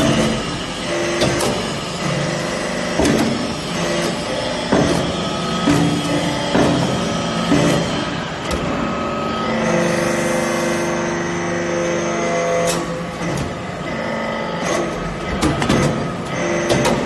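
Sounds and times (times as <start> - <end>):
machine hum: 0.0 - 17.0.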